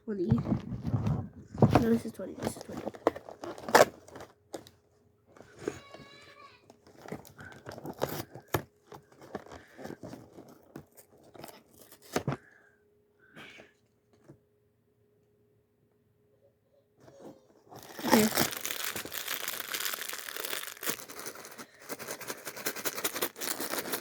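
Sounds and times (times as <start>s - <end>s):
packaging tearing and crinkling: 1.8s - 4.7s, 6.9s - 12.4s, 17.7s - 24.0s.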